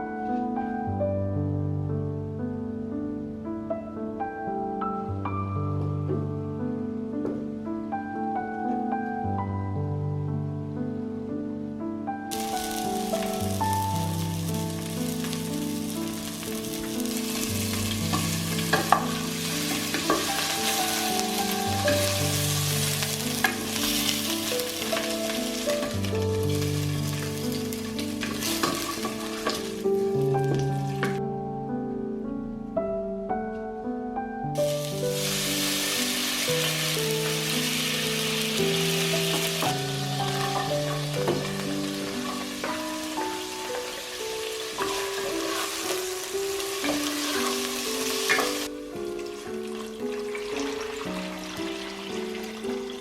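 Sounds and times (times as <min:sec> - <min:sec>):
slow background music: 0:00.0 - 0:53.0
food sizzling in a frying pan: 0:12.3 - 0:31.2, 0:34.6 - 0:53.0.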